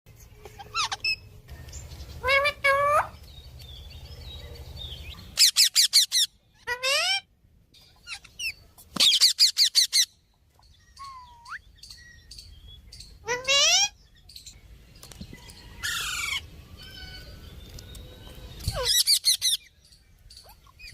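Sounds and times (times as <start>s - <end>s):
parrot chirping: 0.4s - 1.4s, 5.0s - 14.2s, 18.6s - 19.8s.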